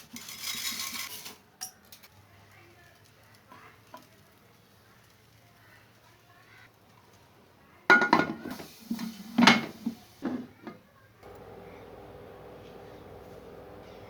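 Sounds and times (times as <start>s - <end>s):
metal cookware clattering: 0.0s - 1.8s, 7.9s - 8.7s
steady low hum: 11.2s - 14.0s.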